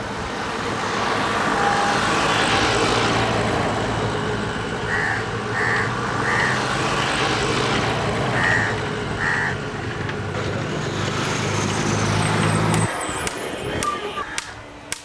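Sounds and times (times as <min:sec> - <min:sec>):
vehicle engines running: 0:00.0 - 0:15.0
short high-pitched beeps: 0:12.7 - 0:14.3.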